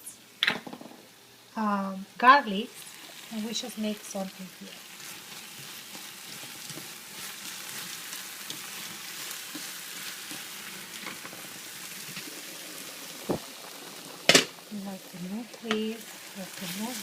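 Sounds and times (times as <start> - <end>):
garlic sizzling in hot oil: 1.1 - 17.0.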